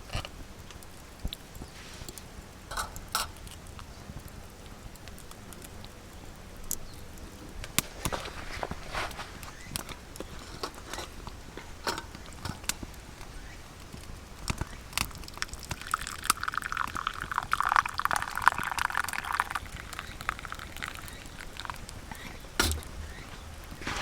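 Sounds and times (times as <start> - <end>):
liquid pouring: 15.2 - 23.0.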